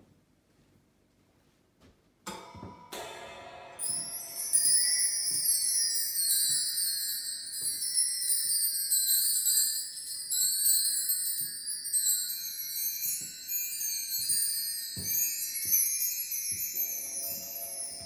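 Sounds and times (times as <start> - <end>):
ringing cymbals: 2.3 - 18.0
soft kick drum thumps: 14.2 - 15.9.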